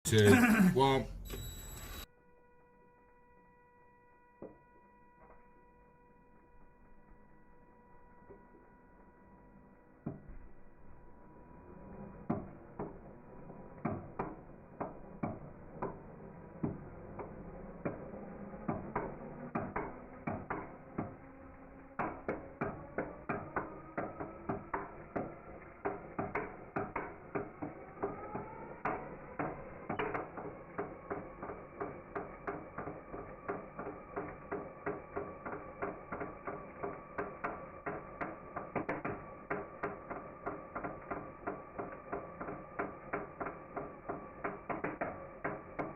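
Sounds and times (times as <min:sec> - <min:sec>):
person speaking: 0:00.0 - 0:01.2
engine knocking: 0:12.3 - 0:45.9.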